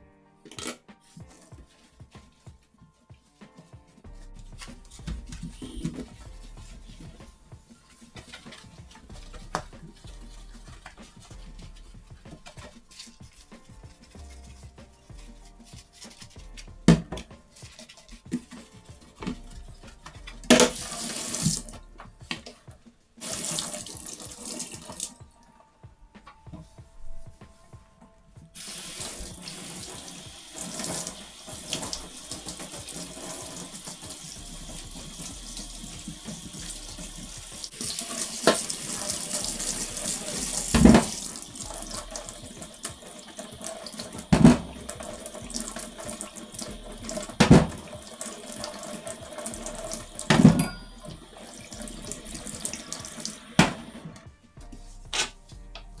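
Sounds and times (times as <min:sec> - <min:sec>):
tap running into sink: 0:04.6 - 0:13.8, 0:16.9 - 0:22.6, 0:23.2 - 0:25.2, 0:28.6 - 0:54.2
objects knocking on sink: 0:16.9 - 0:21.6, 0:39.4 - 0:42.2, 0:44.0 - 0:48.1, 0:49.6 - 0:54.2.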